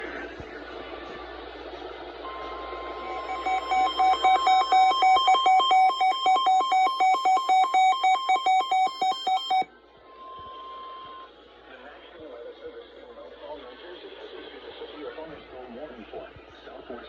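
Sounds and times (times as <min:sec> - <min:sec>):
rapid electronic beeping: 0:02.3 - 0:09.7
warning alarm tone: 0:02.3 - 0:09.7.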